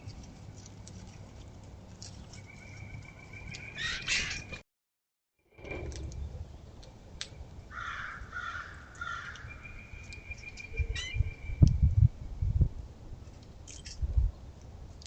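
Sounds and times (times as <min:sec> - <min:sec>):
harsh bird calls: 0:02.5 - 0:04.6.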